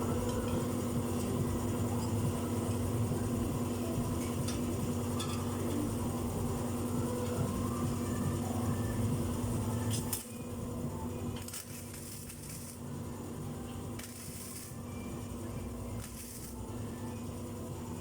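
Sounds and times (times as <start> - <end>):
welding machine humming: 0.0 - 18.0
arc welding hissing bursts: 11.3 - 13.3, 13.9 - 14.9, 16.0 - 16.8.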